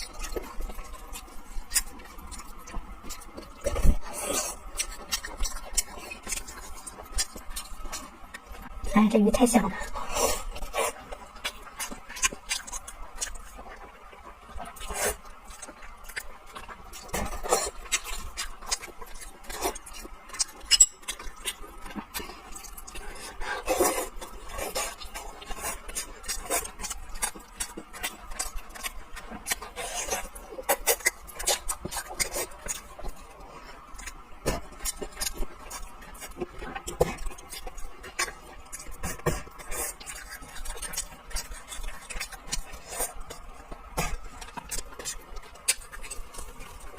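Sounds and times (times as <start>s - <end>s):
person chewing: 0.0s - 8.9s, 9.8s - 46.9s.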